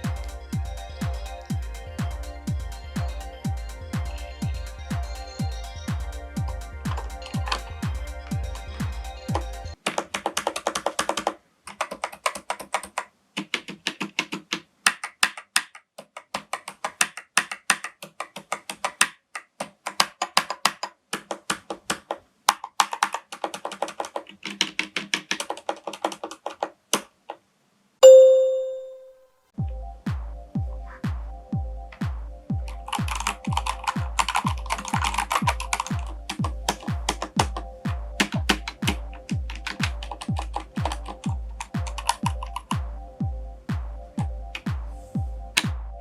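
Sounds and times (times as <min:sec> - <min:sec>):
mechanical keyboard typing: 0:09.7 - 0:27.1, 0:32.7 - 0:37.6, 0:38.2 - 0:42.8
bell-like chime: 0:28.0 - 0:29.2.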